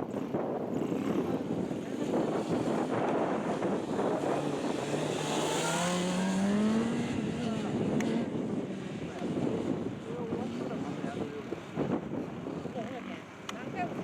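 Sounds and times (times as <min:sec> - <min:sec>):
motorcycle engine accelerating: 0:00.0 - 0:11.1
wind buffeting microphone: 0:00.0 - 0:14.0.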